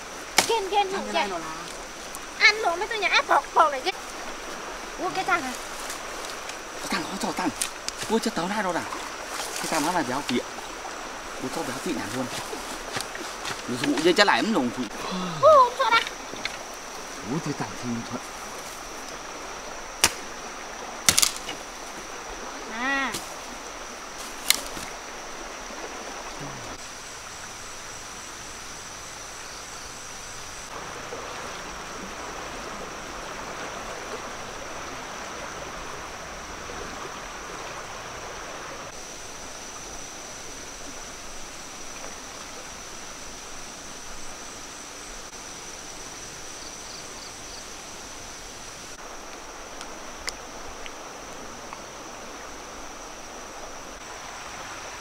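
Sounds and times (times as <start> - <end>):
stream water flowing: 0.0 - 55.0
sharp knock: 20.0 - 20.2.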